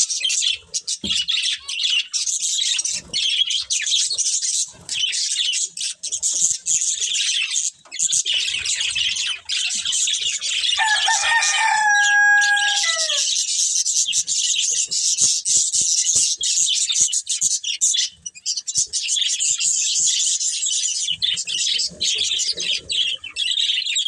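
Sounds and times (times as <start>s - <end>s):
budgerigars chirping: 0.0s - 24.0s
low held bird call: 10.8s - 13.3s.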